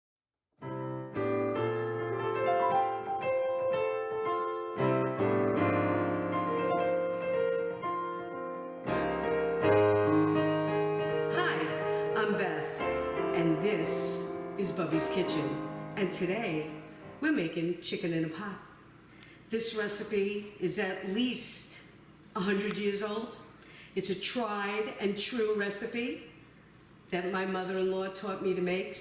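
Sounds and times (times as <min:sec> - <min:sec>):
piano melody: 0:00.6 - 0:17.3
person speaking: 0:11.1 - 0:18.7, 0:19.5 - 0:26.2.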